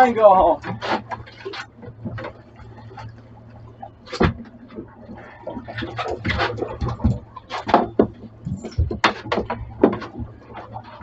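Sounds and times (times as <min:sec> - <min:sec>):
low engine hum: 0:00.0 - 0:11.0
rustling and scraping: 0:00.0 - 0:11.0
knocks: 0:05.5 - 0:10.8.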